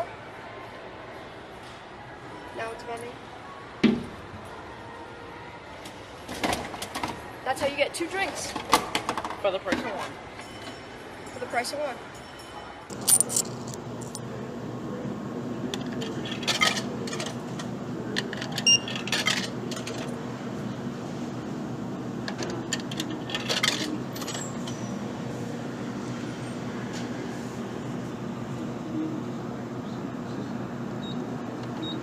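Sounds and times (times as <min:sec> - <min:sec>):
metallic clinks: 0:10.4 - 0:14.2
vending machine hum: 0:12.9 - 0:32.0.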